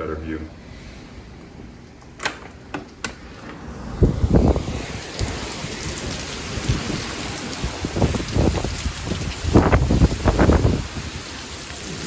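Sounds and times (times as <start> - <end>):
driving rain hiss: 3.2 - 12.0
wind gusts buffeting microphone: 3.5 - 12.0.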